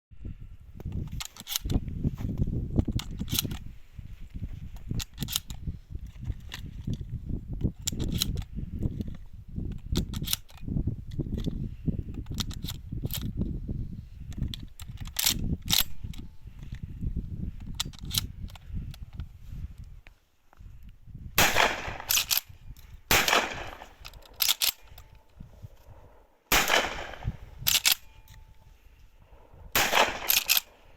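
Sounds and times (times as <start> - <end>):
shotguns firing: 21.4 - 22.3, 23.1 - 24.0, 26.5 - 27.5, 29.7 - 30.7.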